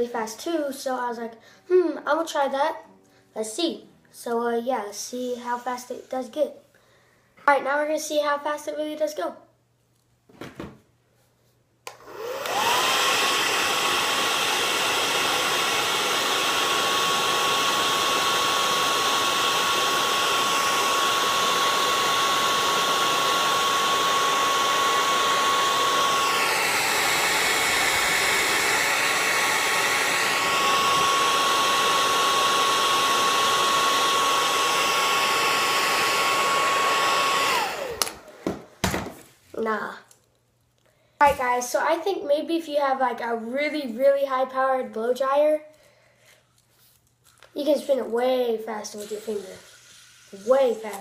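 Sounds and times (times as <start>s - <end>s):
hair dryer blowing and whining: 11.9s - 39.1s, 48.9s - 51.0s.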